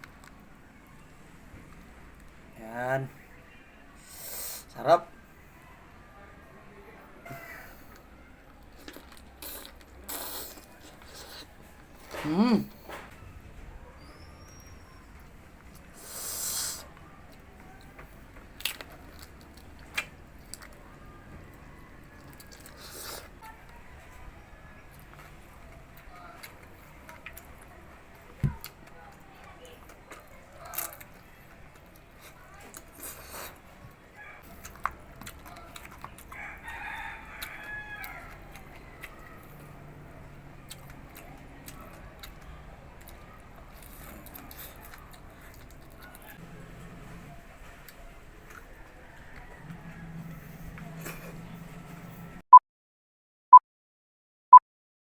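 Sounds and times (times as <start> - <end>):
crunchy food being chewed: 7.3 - 13.2, 14.4 - 51.9
rooster crowing: 36.3 - 39.4, 48.7 - 52.4.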